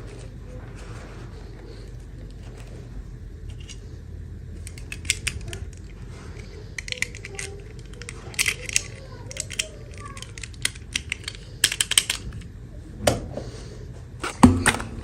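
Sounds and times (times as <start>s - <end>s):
steady low hum: 0.0s - 15.0s
plastic toy pieces clicking: 4.6s - 12.5s.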